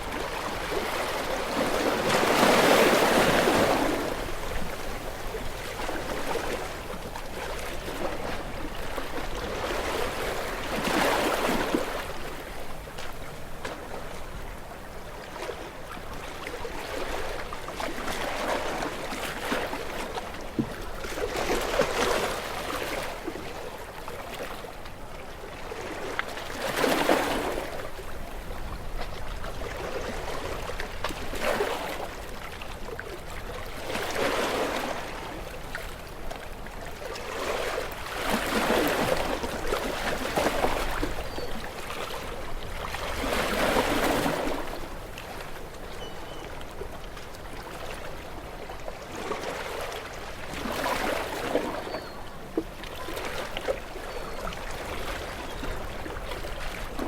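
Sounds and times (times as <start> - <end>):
waves washing onto beach: 0.0 - 25.0.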